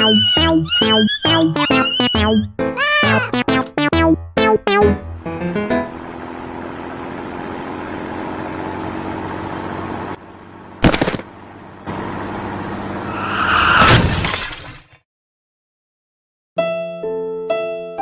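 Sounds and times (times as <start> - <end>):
cartoon crash: 13.1 - 14.8.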